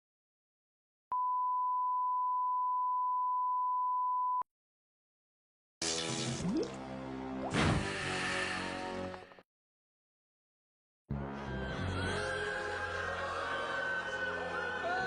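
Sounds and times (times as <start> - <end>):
steady test tone beep: 1.1 - 4.4
music: 5.9 - 9.4, 11.1 - 15.0.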